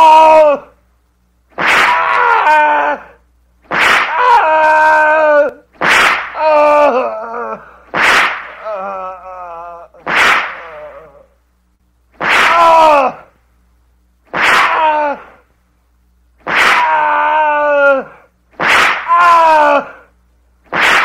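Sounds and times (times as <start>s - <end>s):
whip cracking: 1.5s - 2.0s, 3.6s - 4.2s, 5.8s - 6.4s, 8.0s - 8.6s, 10.0s - 10.8s, 12.2s - 12.7s, 14.3s - 14.8s, 16.4s - 17.0s, 18.5s - 19.2s, 20.7s - 21.0s
man crying out in pain: 1.8s - 3.2s, 4.1s - 5.6s, 6.4s - 7.8s, 8.6s - 10.0s, 10.6s - 11.3s, 14.7s - 15.4s, 16.8s - 18.3s, 19.1s - 20.1s
man moaning: 1.9s - 3.2s, 4.2s - 5.6s, 6.4s - 7.8s, 8.6s - 10.0s, 10.6s - 11.4s, 14.7s - 15.4s, 16.9s - 18.3s.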